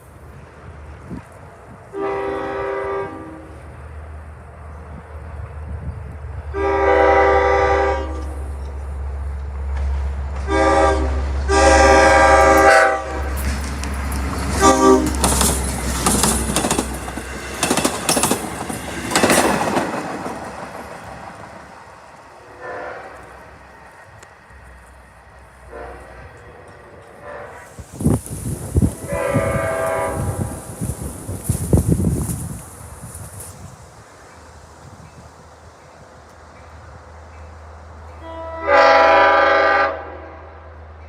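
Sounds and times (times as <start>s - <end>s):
locomotive air horn blasts: 1.9s - 3.7s, 6.5s - 8.5s, 10.4s - 13.5s, 14.5s - 15.3s, 22.5s - 23.4s, 25.6s - 27.8s, 29.0s - 30.7s, 38.2s - 40.8s
wheels clattering over rail joints: 12.3s - 21.7s.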